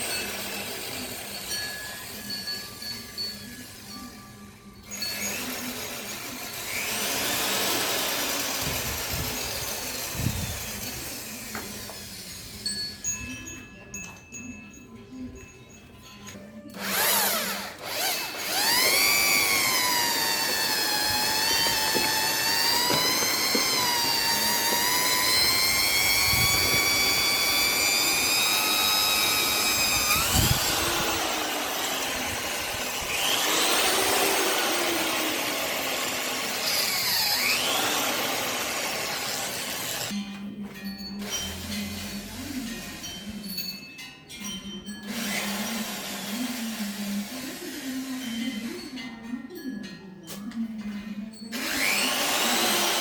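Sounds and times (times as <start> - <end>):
power tool motor whining: 5.1 - 12.4, 16.7 - 40.2, 45.0 - 48.1, 51.5 - 53.0.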